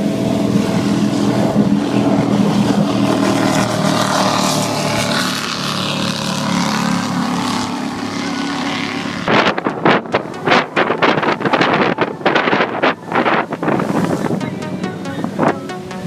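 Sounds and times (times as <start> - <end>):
motorboat engines droning: 0.0 - 16.0
water and hull noise: 0.0 - 16.0
wind buffeting microphone: 8.6 - 14.6.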